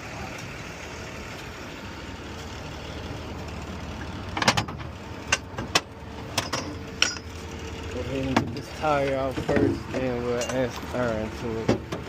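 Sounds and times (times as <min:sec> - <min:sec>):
motor vehicle rumble: 0:00.0 - 0:12.0
tools knocking and clanking: 0:04.4 - 0:07.3.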